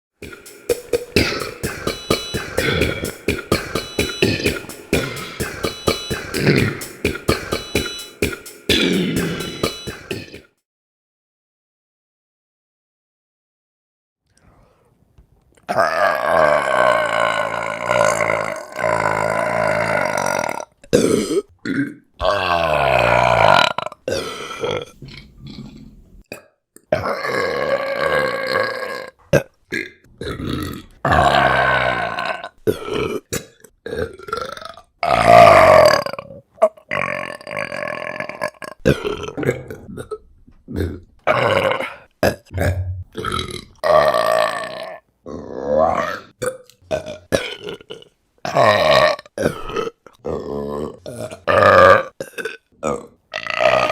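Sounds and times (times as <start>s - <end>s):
woman burping: 37.0s - 44.8s.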